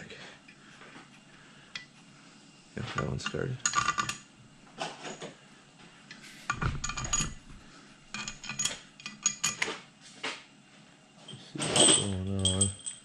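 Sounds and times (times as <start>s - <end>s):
metal tools clinking and rattling: 2.9s - 4.2s, 6.5s - 7.4s, 8.1s - 9.7s, 11.2s - 13.0s.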